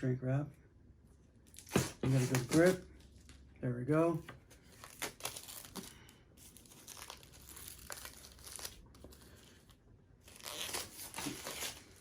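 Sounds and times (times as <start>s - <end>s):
plastic wrap crinkling and tearing: 4.7s - 9.5s, 10.2s - 12.0s.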